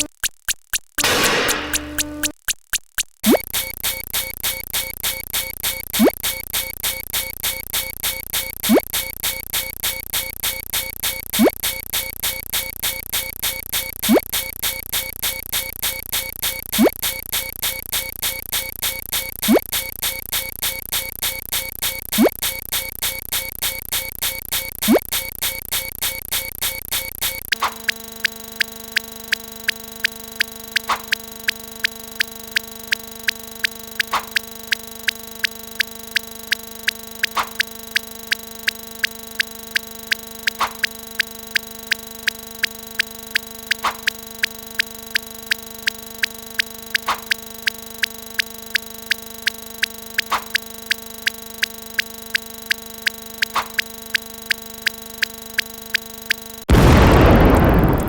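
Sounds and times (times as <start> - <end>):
sharp ticking clicks: 0.0 - 58.0
explosion-like burst: 56.7 - 58.0
low two-tone hum: 56.7 - 58.0.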